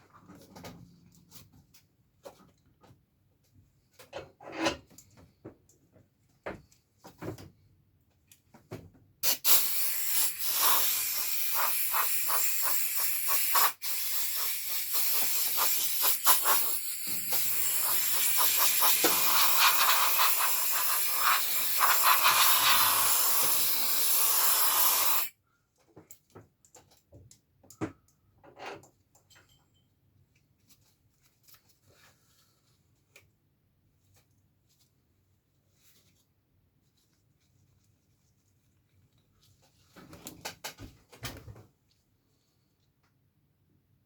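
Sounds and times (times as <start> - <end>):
compressed air hissing: 9.2 - 25.3.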